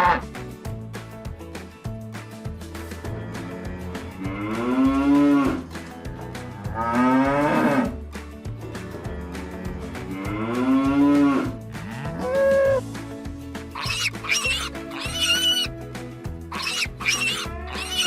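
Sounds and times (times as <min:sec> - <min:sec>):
background music: 0:00.0 - 0:18.0
cows mooing: 0:13.8 - 0:15.7, 0:16.5 - 0:18.0.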